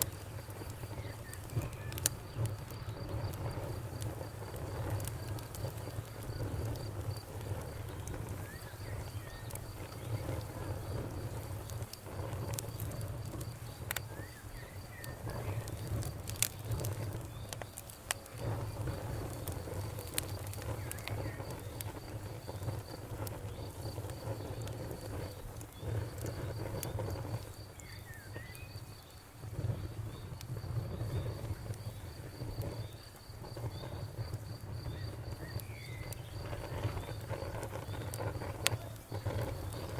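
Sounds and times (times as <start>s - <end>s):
cricket chirping: 0.0s - 39.9s
rushing of flames: 0.0s - 39.9s
wood fire crackling and popping: 0.0s - 39.9s.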